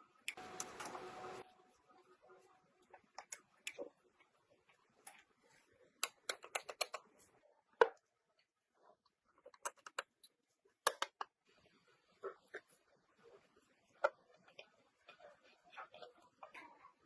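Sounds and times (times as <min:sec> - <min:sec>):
sharp clicks and taps: 0:09.5 - 0:11.4.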